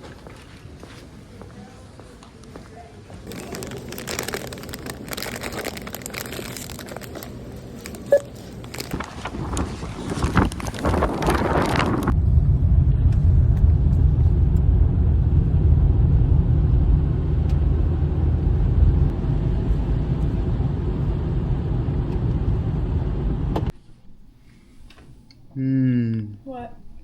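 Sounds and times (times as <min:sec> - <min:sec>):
car engine and road noise: 0:03.3 - 0:23.7.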